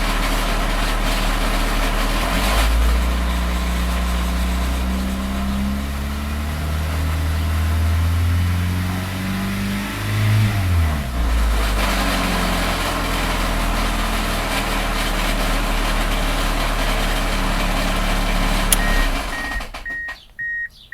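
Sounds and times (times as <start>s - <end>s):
car engine revving: 0.0s - 19.9s
engine knocking grinding noise: 0.0s - 20.3s
click: 18.7s - 20.3s
electronic beeping chime: 18.8s - 20.8s.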